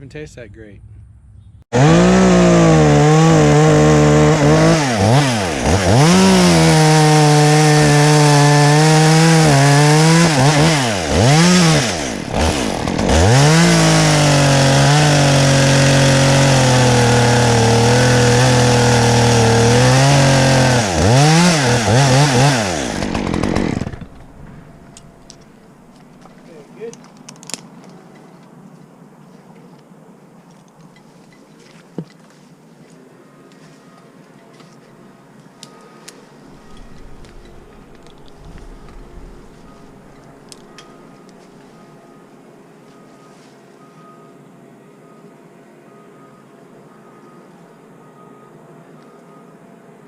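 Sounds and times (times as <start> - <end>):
chainsaw cutting wood: 1.8 - 26.4.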